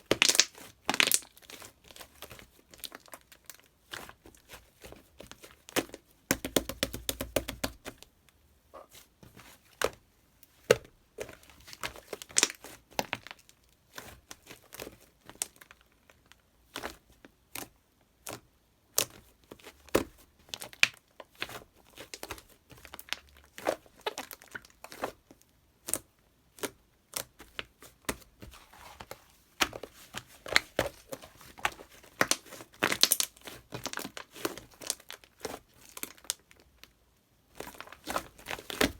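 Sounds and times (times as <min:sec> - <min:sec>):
crinkling and rustling: 0:08.8 - 0:17.7, 0:19.0 - 0:36.9, 0:37.5 - 0:38.9.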